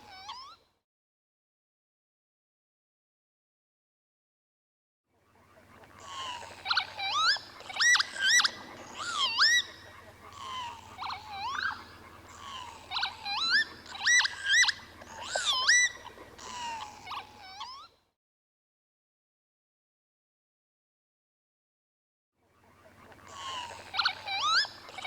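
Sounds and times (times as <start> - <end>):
lapwings calling: 5.5 - 17.4, 22.7 - 25.0.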